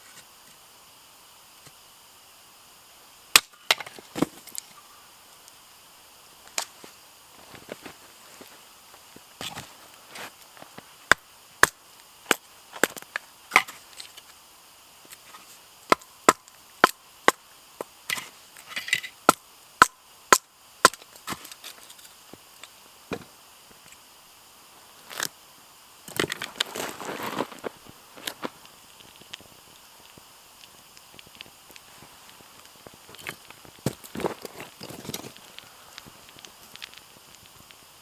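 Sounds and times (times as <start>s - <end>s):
firewood chopping strikes: 3.4s - 4.4s, 11.1s - 13.8s, 15.9s - 17.4s, 19.3s - 21.5s.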